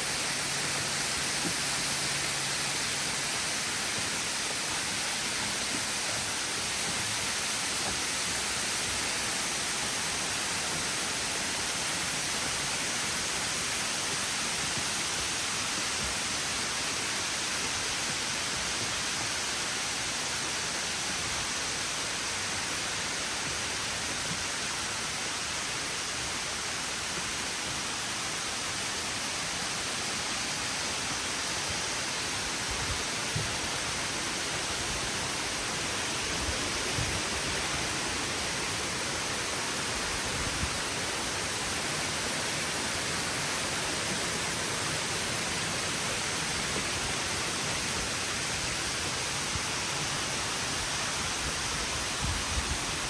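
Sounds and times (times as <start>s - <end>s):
waterfall rushing: 0.0s - 14.7s, 29.1s - 53.0s.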